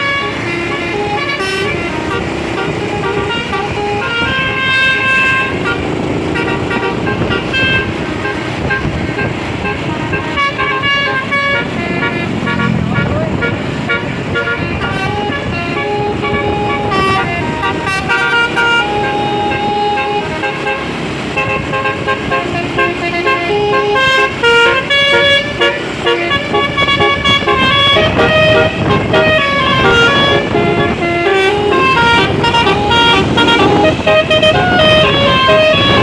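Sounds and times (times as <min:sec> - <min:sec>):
multi-tone bus horns playing tune: 0:00.0 - 0:36.0.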